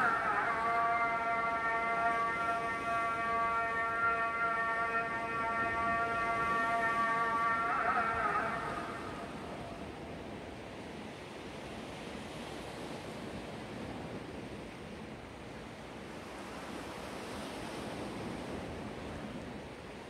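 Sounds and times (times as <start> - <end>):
waves washing against shore: 0.0 - 20.0.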